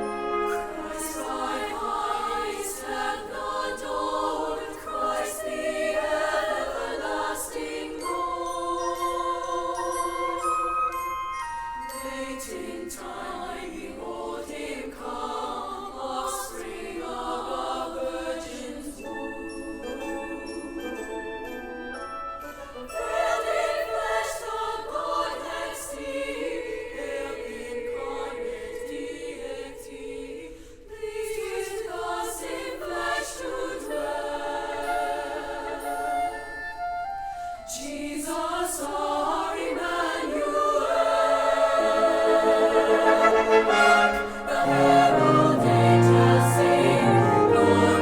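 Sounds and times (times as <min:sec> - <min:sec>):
orchestral accompaniment: 0:00.0 - 0:02.4, 0:41.7 - 0:48.0
choir singing: 0:00.0 - 0:48.0.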